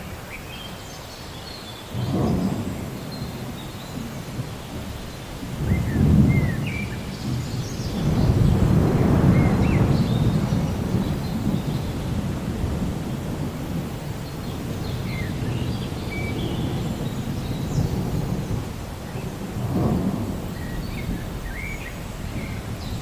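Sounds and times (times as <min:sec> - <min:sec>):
steady rain: 0:00.0 - 0:23.0
thunder rumbling: 0:02.0 - 0:23.0.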